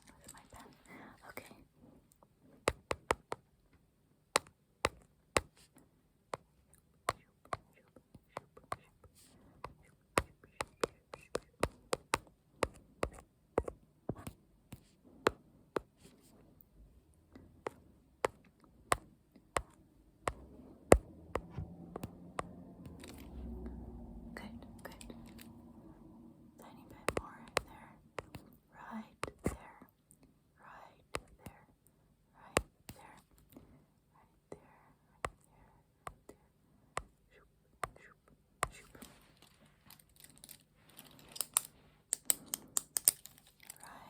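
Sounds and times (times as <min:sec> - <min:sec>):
sharp taps: 0:18.2 - 0:23.1, 0:26.9 - 0:28.5.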